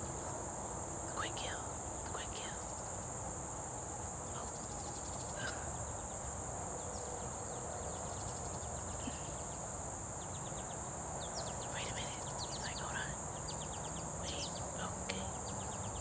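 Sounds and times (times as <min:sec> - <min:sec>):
insects trilling: 0:00.0 - 0:16.0
faint rapid chirping: 0:07.5 - 0:16.0.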